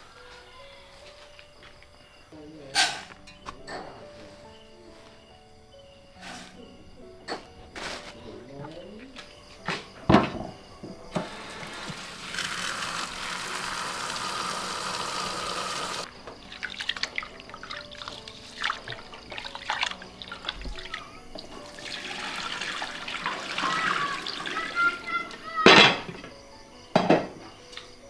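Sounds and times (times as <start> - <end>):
water running: 11.1 - 25.5.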